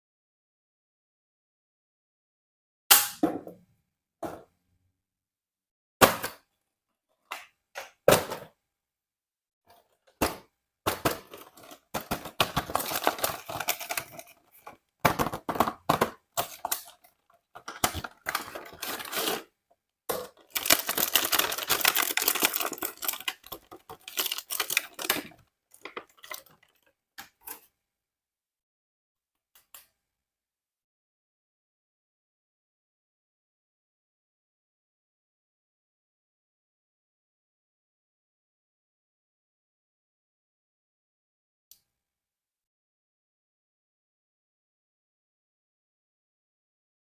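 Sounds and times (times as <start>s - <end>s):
packaging crinkling and tearing: 11.2s - 14.8s, 17.6s - 19.5s, 20.4s - 26.9s.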